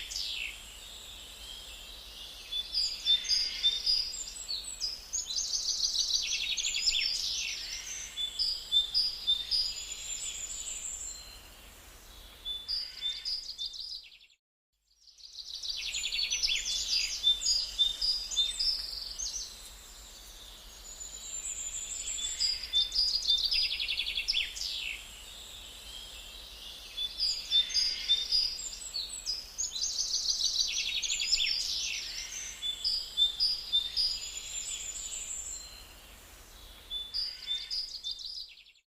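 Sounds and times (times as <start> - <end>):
songbirds chirping and trilling: 0.0 - 14.4, 15.0 - 38.8.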